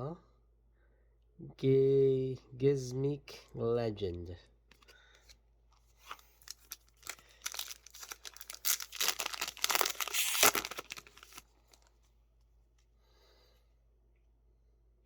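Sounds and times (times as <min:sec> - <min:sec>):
foil wrapper crinkling: 0:06.0 - 0:11.9
sharp rip of foil: 0:06.6 - 0:11.4.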